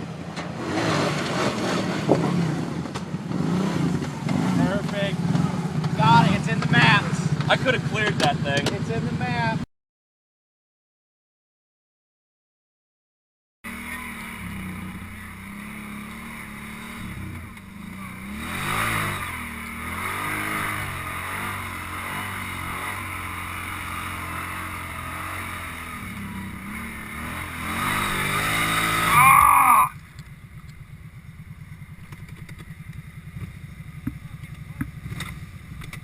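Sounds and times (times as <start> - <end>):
quad bike engine revving: 0.0 - 9.6, 13.7 - 36.0.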